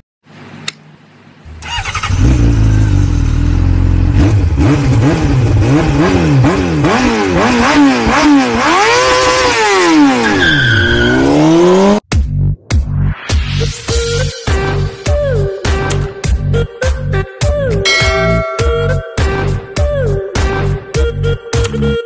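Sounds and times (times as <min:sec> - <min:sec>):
engine revving: 0:01.5 - 0:10.2.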